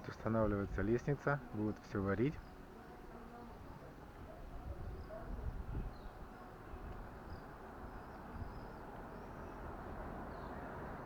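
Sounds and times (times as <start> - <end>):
faint bird chirps: 4.3 - 10.7.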